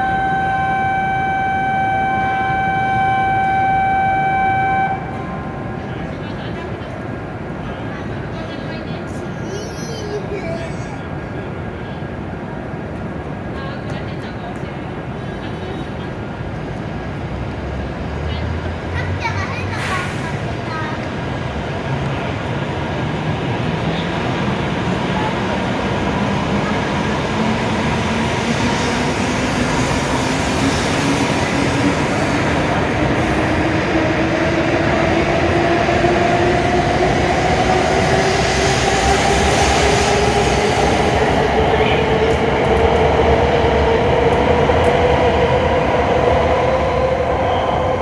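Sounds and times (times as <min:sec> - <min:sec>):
train accelerating: 0:00.0 - 0:48.0.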